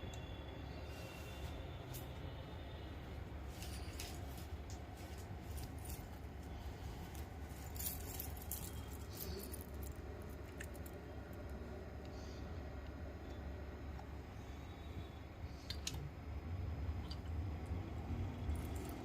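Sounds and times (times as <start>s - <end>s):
steady low hum: 0.0s - 19.0s
small hard parts clicking and rattling: 7.0s - 11.5s.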